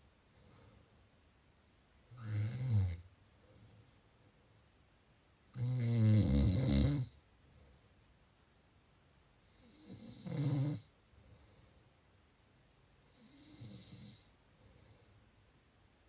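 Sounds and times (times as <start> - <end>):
person snoring: 2.1 - 3.0, 5.6 - 7.1.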